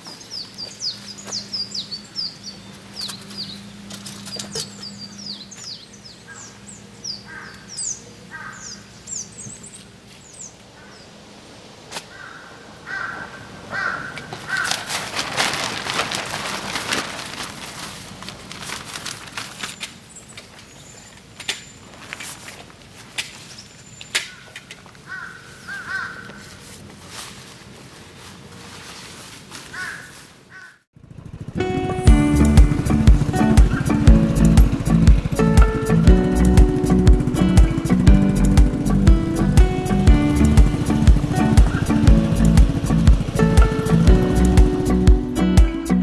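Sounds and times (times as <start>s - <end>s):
small bird chirping: 0.0s - 11.1s
crow cawing: 6.3s - 8.9s, 12.1s - 15.0s, 24.3s - 26.6s, 29.7s - 30.8s.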